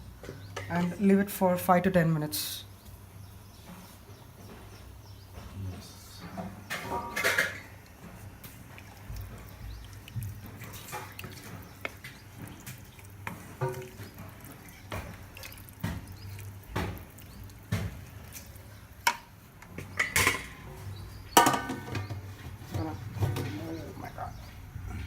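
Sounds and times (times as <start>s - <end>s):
water dripping: 7.8s - 22.3s.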